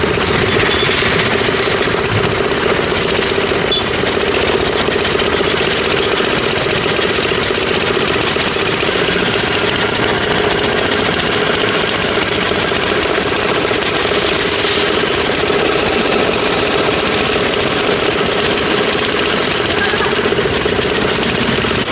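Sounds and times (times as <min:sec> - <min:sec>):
concrete mixer engine running: 0:00.0 - 0:21.9.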